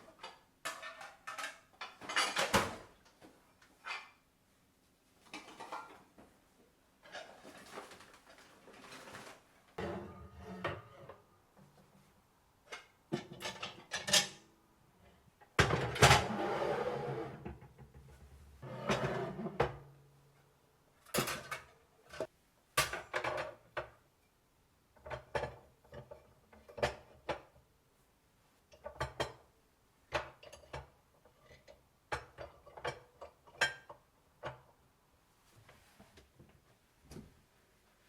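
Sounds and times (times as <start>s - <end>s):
kitchen things knocking and clinking: 9.8s - 11.2s.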